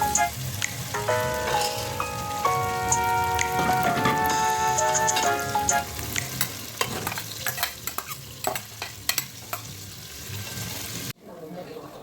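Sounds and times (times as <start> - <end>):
food sizzling in a frying pan: 0.0 - 11.2.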